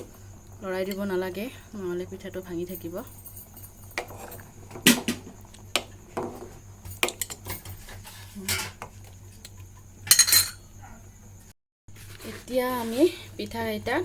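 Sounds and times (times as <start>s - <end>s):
utensil scraping a cooking pot: 3.9s - 9.6s.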